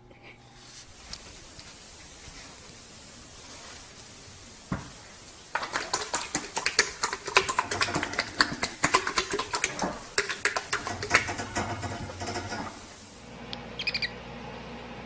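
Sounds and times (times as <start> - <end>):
rapid clicking and tapping: 5.5 - 13.0.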